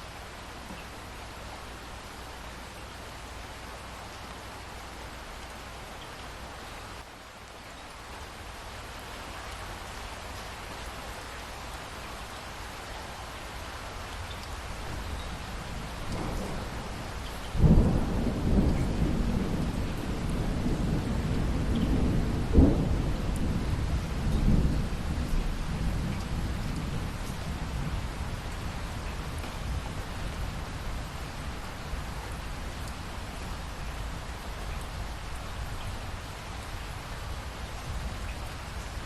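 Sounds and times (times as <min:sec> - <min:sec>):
rain hiss: 0:00.0 - 0:39.0
low thunder rumble: 0:15.1 - 0:33.4.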